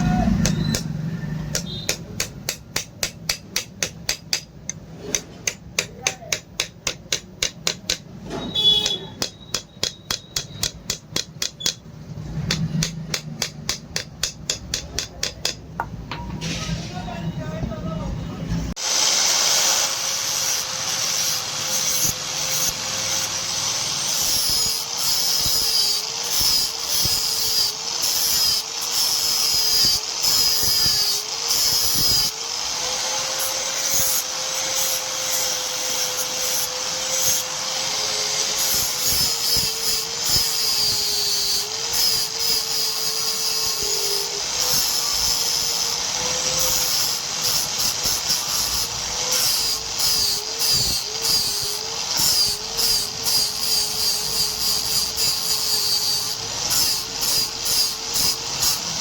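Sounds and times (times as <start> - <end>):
electric grinder grinding steel: 18.8 - 59.0.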